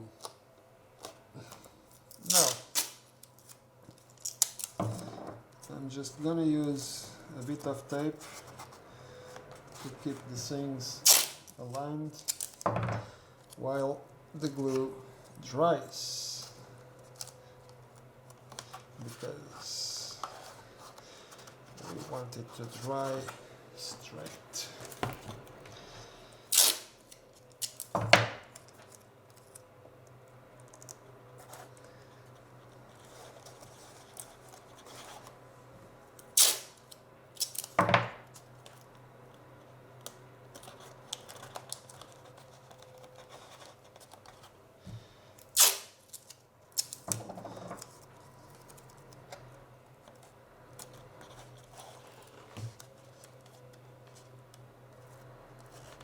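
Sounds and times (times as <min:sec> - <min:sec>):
faint steady hum: 0:00.0 - 0:56.0
tape ripping off a roll: 0:02.1 - 0:04.8, 0:11.0 - 0:11.6, 0:26.5 - 0:28.7, 0:36.3 - 0:38.4, 0:45.4 - 0:48.0
quiet handling noise: 0:11.6 - 0:25.8, 0:47.0 - 0:56.0.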